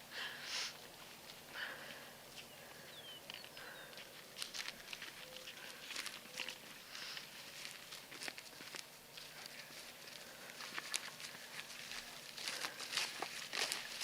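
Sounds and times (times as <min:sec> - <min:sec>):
steps rustling through vegetation: 0:00.5 - 0:14.0.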